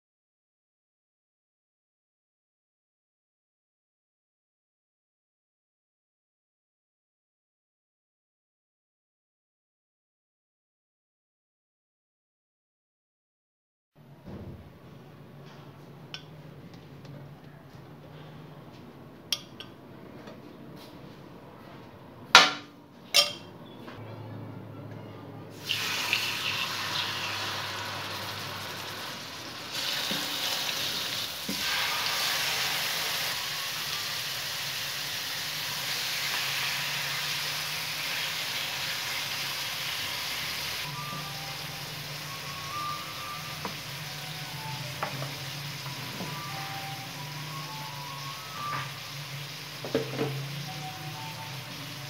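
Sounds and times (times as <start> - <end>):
chicken sizzling in hot oil: 25.6 - 52.0.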